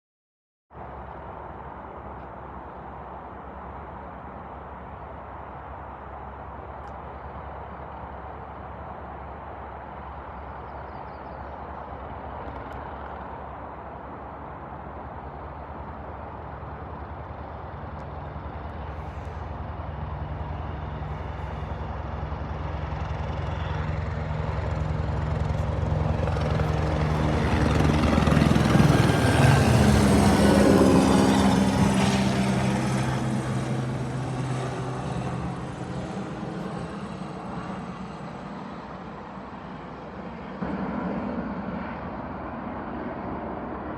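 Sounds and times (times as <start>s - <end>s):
helicopter flying over: 0.8s - 43.9s.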